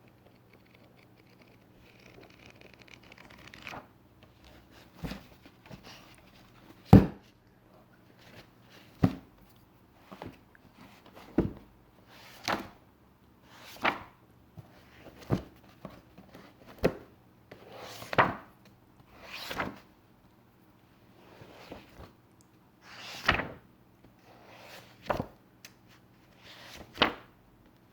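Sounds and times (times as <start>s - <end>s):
book pages turning: 0.0s - 6.7s, 22.9s - 23.6s.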